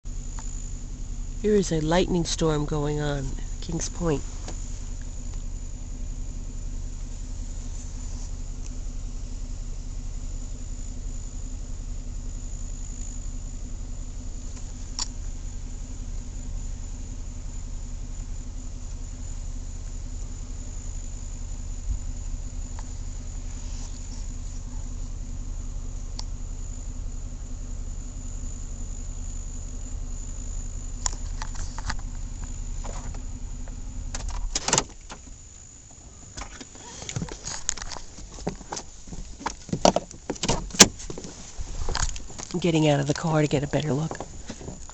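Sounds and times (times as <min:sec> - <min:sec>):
car engine idling: 0:00.0 - 0:44.9
low hum: 0:00.0 - 0:44.9
insects chirring: 0:00.1 - 0:44.9
engine switch-off click: 0:01.6 - 0:09.4, 0:12.8 - 0:19.4, 0:21.8 - 0:25.2, 0:26.0 - 0:26.4, 0:30.9 - 0:44.9
clicks and knocks inside car: 0:31.0 - 0:44.9.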